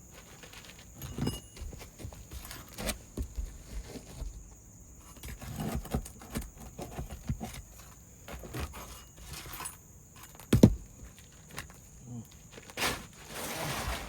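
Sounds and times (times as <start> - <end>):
footsteps on roof: 0.0 - 4.6, 10.4 - 11.8
scraping on shingle roof: 0.1 - 14.0
heavy thump: 10.5 - 10.9.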